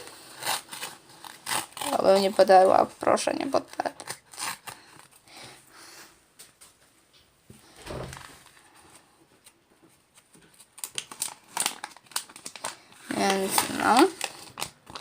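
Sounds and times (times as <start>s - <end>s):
foil sachet rustling: 0.0s - 5.2s, 10.6s - 15.0s
quick foil crinkles: 10.5s - 15.0s.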